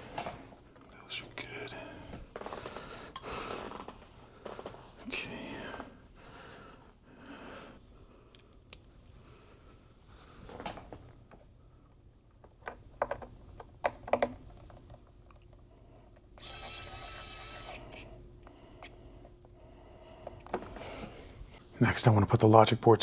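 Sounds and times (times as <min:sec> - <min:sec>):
clicks and taps handling parts: 0:12.4 - 0:16.3, 0:20.2 - 0:20.8.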